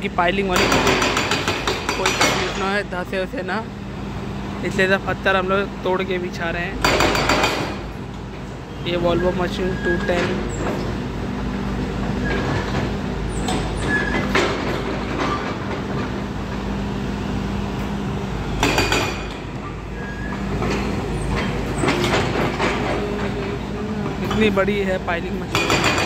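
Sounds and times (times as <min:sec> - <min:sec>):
excavator diesel engine running: 0:00.0 - 0:26.0
metallic knocks and clanks: 0:06.8 - 0:07.9, 0:18.6 - 0:19.6, 0:20.6 - 0:26.0.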